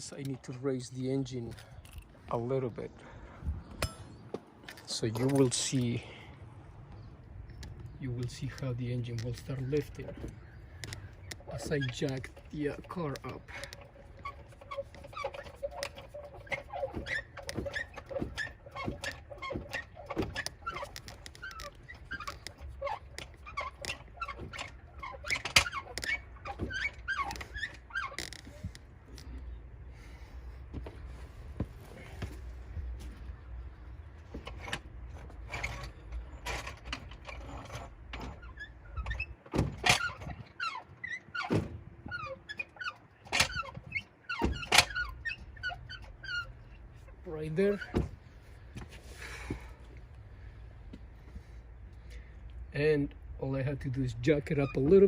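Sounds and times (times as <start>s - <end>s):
car jack squeaking and clicking: 6.9s - 30.2s, 33.4s - 52.3s, 54.4s - 55.0s.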